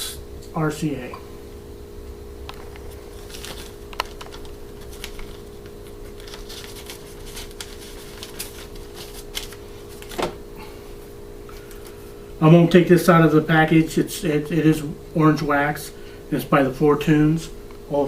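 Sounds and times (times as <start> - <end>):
low hum: 0.0 - 18.0
plastic sleeves rustling: 2.5 - 10.4.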